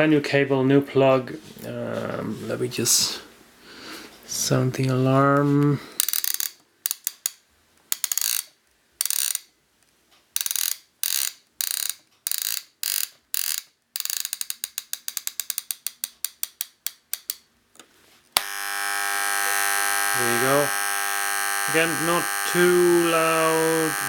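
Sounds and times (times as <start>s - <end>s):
clock winding ratchet clicks: 6.0s - 9.5s, 10.4s - 17.4s
alarm clock buzzing: 18.4s - 24.0s.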